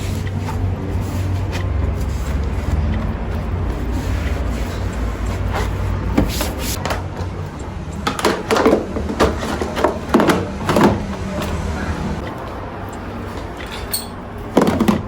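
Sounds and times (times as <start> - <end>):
household objects knocking and clattering: 8.0 - 11.1, 14.6 - 15.0.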